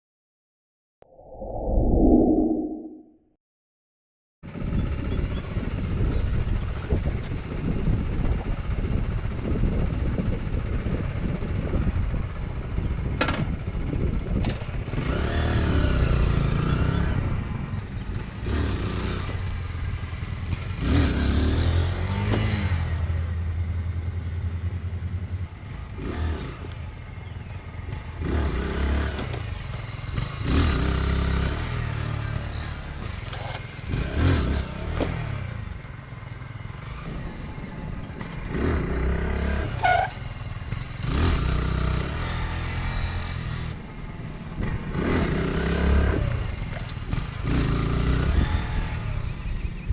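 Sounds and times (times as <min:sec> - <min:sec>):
motorcycle engine revving: 0:18.0 - 0:43.8, 0:44.6 - 0:49.8.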